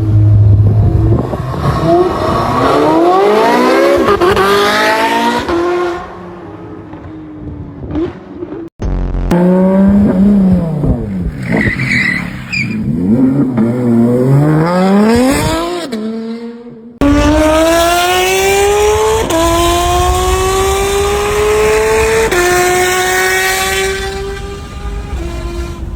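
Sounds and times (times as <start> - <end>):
engine accelerating with upshifts: 0.0 - 25.9
sports car engine revving: 9.3 - 25.9.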